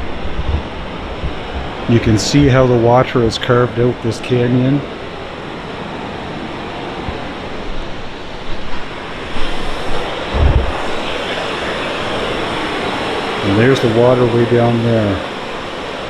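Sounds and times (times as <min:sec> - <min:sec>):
wind buffeting microphone: 0:00.0 - 0:03.4, 0:04.7 - 0:16.0
river water rushing: 0:04.8 - 0:16.0.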